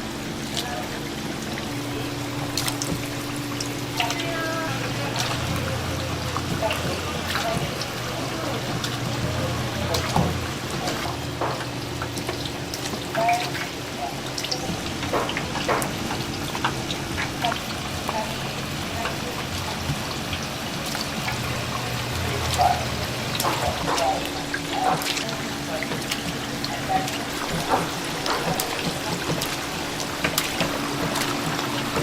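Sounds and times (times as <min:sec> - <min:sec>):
low steady hum: 0:00.0 - 0:32.0
small crackles and clicks: 0:01.6 - 0:18.4.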